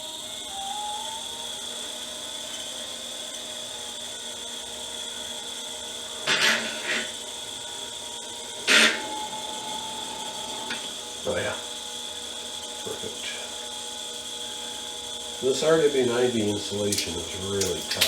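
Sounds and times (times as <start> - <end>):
motor whine: 0.0 - 18.0
loud scraping bursts: 6.3 - 7.1, 8.6 - 11.4.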